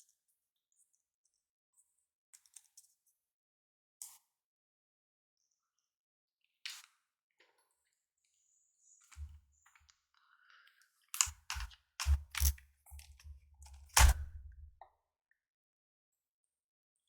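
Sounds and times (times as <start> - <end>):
plastic laptop parts clicking: 11.2 - 14.6.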